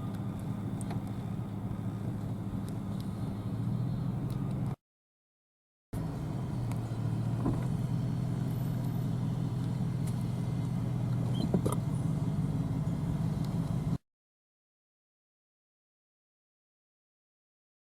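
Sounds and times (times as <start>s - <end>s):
combine harvester engine drone: 0.0s - 4.8s, 6.0s - 14.0s.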